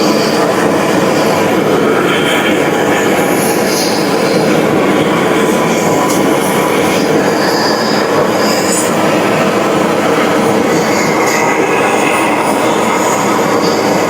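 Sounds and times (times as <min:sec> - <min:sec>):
heavy machine running: 0:00.0 - 0:14.0.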